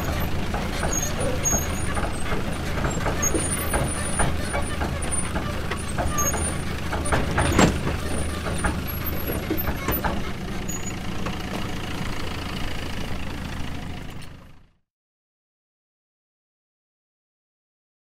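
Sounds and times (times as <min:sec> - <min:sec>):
metallic clanks and knocks: 0:00.0 - 0:12.6
excavator engine running: 0:00.0 - 0:14.8.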